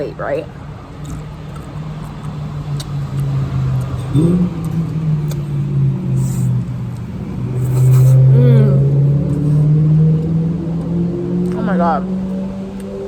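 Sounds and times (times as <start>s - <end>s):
loud low steady hum: 0.0s - 13.0s
eating clicks and smacking: 1.0s - 5.5s.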